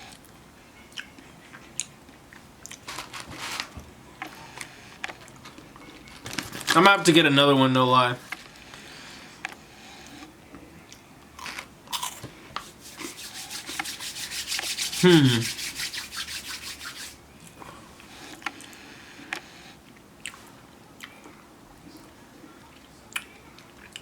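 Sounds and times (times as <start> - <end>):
wafer cookie crunching: 2.6 - 3.7
person humming: 14.9 - 15.7.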